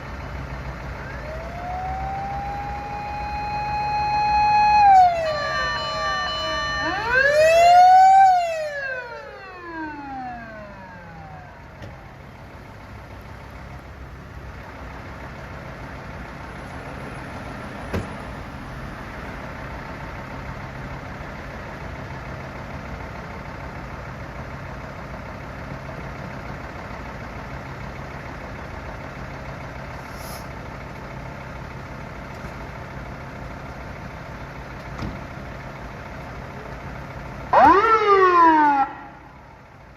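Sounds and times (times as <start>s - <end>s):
vehicle engine idling: 0.0s - 39.9s
electronic siren winding down: 1.0s - 12.1s, 37.5s - 39.4s.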